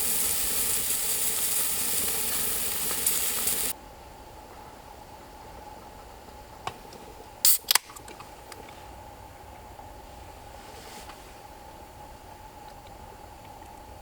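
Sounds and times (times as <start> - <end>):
loud hiss: 0.0 - 3.7, 7.4 - 7.8.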